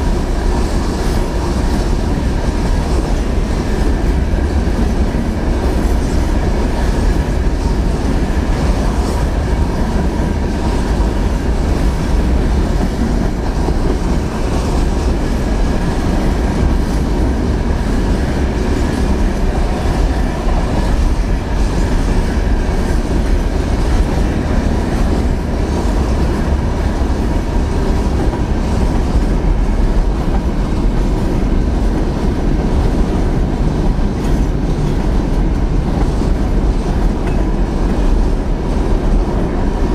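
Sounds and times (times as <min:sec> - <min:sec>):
train wheels clacking on rails: 0:00.0 - 0:39.9
wind on microphone: 0:00.0 - 0:39.9.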